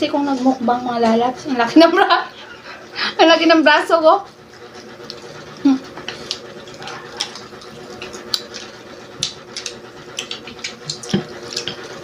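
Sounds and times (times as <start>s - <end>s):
crunchy chewing: 4.5s - 12.0s.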